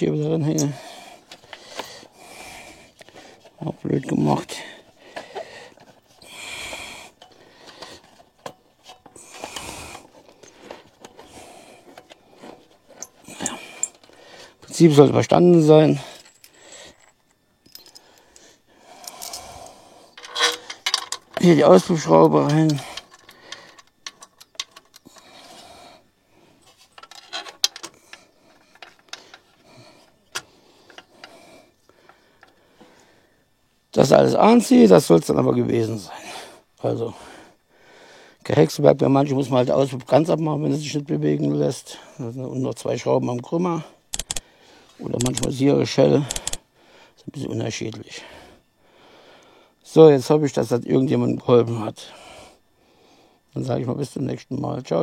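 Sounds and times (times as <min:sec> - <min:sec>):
metallic clicks and clinks of tools: 0:13.0 - 0:14.1, 0:16.0 - 0:18.4, 0:19.0 - 0:21.5, 0:22.1 - 0:25.2, 0:44.1 - 0:44.4, 0:45.1 - 0:45.5, 0:46.2 - 0:46.6
ratchet wrench clicking: 0:44.1 - 0:44.4, 0:46.2 - 0:46.6.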